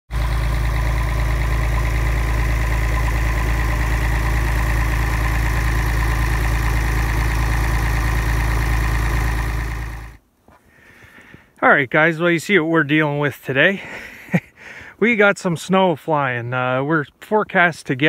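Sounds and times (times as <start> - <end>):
tractor engine running: 0.1 - 10.2.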